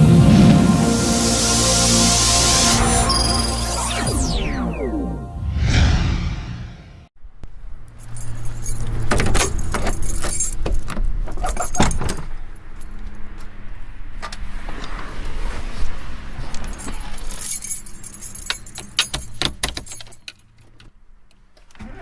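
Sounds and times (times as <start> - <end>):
keys jangling: 8.0 - 10.7, 11.3 - 12.2, 16.7 - 20.5.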